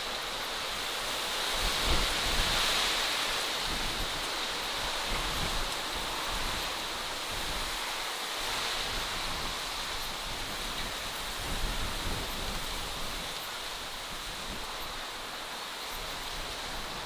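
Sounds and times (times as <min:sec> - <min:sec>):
outdoor ambient hiss: 0:00.0 - 0:17.0
wind rumble on microphone: 0:00.0 - 0:17.0.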